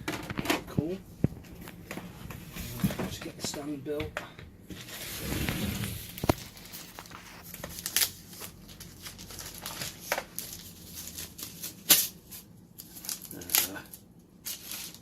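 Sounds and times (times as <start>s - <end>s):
packaging rustling and crinkling: 4.8s - 15.0s.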